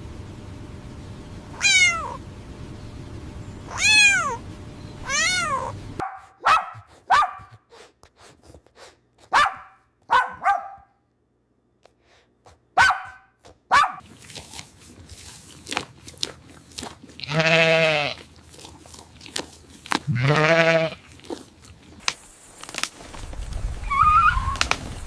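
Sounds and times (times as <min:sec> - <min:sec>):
cat meowing: 0:01.5 - 0:02.2, 0:03.7 - 0:04.4, 0:05.0 - 0:05.8
dog barking: 0:05.0 - 0:07.6, 0:09.3 - 0:11.0, 0:12.8 - 0:14.0
goat-like bleat: 0:17.2 - 0:18.3, 0:20.1 - 0:21.1.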